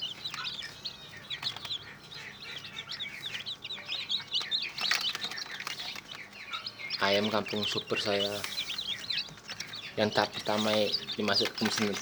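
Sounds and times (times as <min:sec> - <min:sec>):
chicks peeping: 0:00.0 - 0:12.0.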